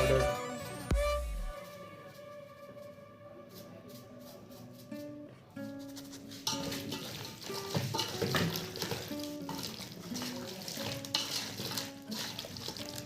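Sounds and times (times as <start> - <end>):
background music: 0.0 - 5.0
spoon scraping in a bowl: 5.8 - 13.0.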